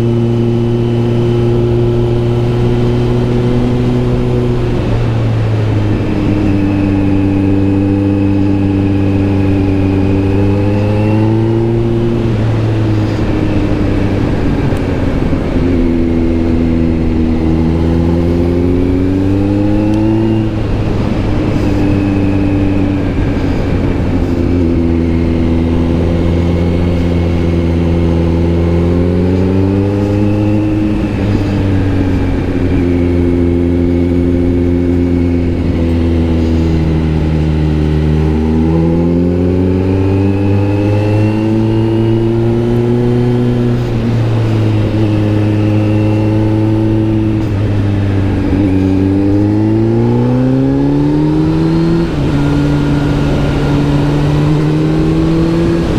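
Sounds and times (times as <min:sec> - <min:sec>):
motorcycle engine riding: 0:00.0 - 0:55.9.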